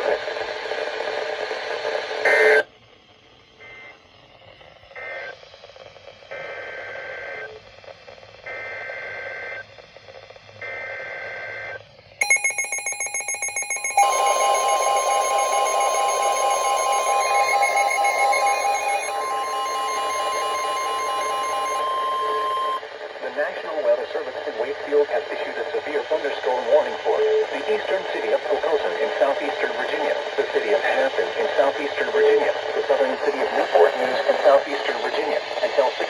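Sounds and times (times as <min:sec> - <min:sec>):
steady warning alert tone: 0:12.2 - 0:22.8
pulsing higher alarm tone: 0:12.2 - 0:22.9
buzzy data bursts: 0:13.6 - 0:22.8.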